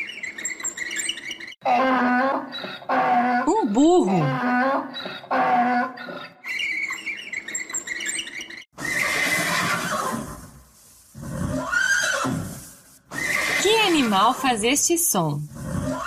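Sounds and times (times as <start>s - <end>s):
donkey braying: 1.6s - 10.2s.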